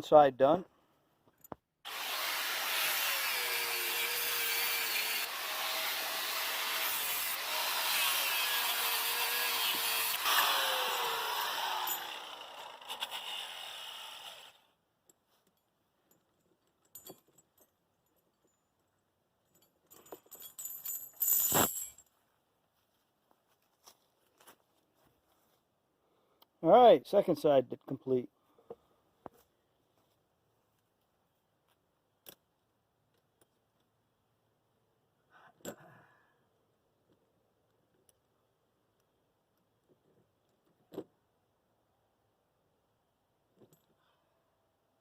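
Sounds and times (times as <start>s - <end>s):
power tool running: 1.9s - 14.6s
light metallic clinks: 15.1s - 22.1s.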